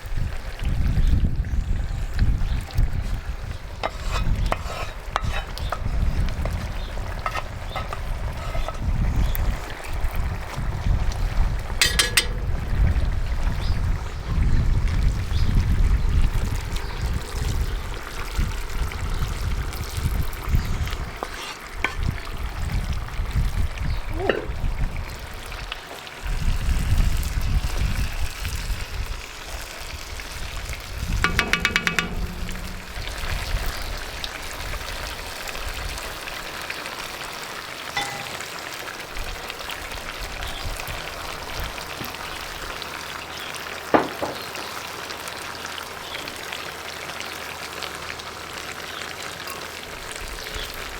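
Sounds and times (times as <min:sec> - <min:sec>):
food sizzling in a pot: 0:00.0 - 0:50.9
handling knocks and rumbles: 0:31.3 - 0:33.6.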